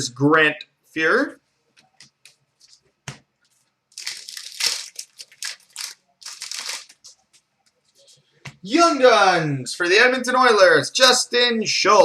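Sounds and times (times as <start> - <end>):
wrapper tearing and crinkling: 3.9 - 7.1.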